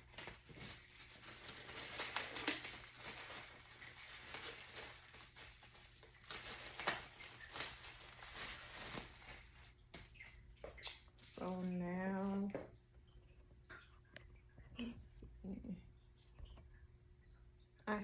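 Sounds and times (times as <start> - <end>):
plastic and cardboard rustling: 0.0 - 11.6.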